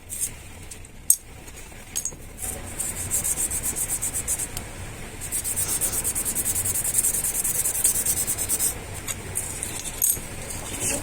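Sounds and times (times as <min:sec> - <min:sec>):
brake pad rasping on sandpaper: 0:02.4 - 0:04.6, 0:05.2 - 0:09.6.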